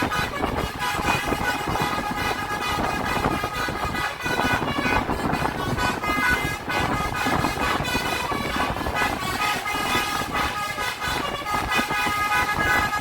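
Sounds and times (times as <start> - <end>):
bus horn playing a tune: 0.0 - 13.0
road and engine noise: 0.0 - 13.0.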